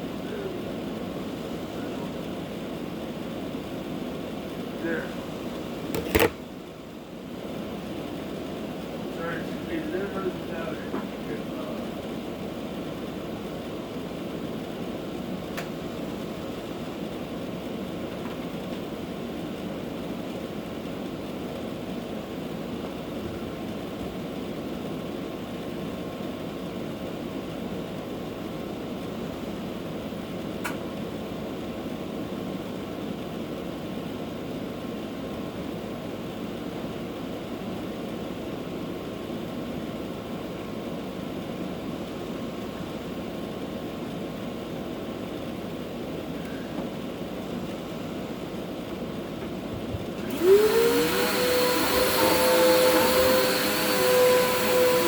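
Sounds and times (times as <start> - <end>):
vacuum cleaner running: 5.8 - 6.4, 49.9 - 55.0.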